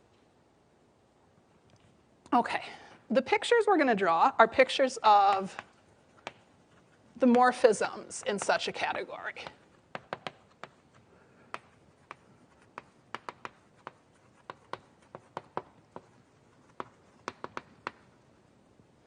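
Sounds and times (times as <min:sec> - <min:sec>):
pen tapping and stroking on board: 0:05.2 - 0:18.2.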